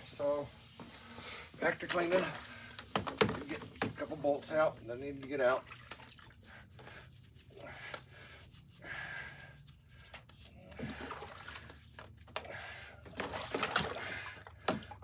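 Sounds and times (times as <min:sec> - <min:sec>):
water sloshing: 0:01.6 - 0:07.0, 0:10.2 - 0:15.0.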